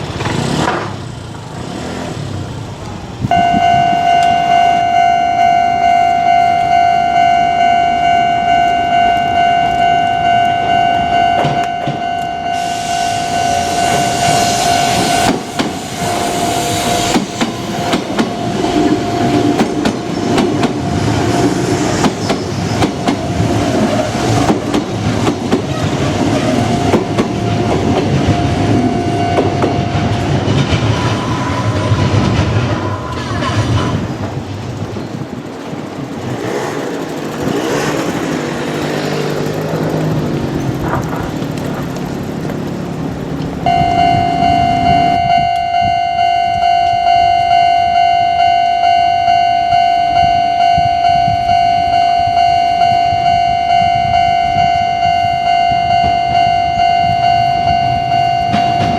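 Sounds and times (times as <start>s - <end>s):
train wheels clattering on rails: 0.0s - 3.3s, 9.0s - 43.7s, 57.0s - 58.9s
electric train running: 0.0s - 58.9s
level crossing electronic bell: 3.3s - 15.2s, 26.6s - 30.5s, 43.7s - 58.9s.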